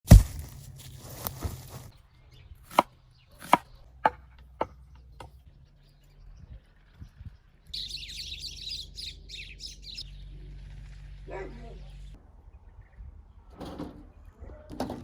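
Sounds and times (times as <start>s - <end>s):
chopping strikes: 0.1s - 0.6s, 2.7s - 5.4s
birds chirping: 1.0s - 14.7s.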